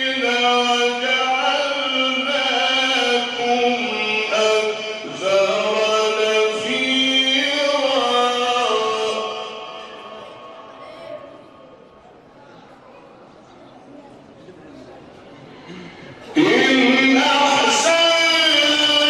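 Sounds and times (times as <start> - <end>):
man reciting in melodic chant: 0.0 - 12.0, 15.8 - 19.0.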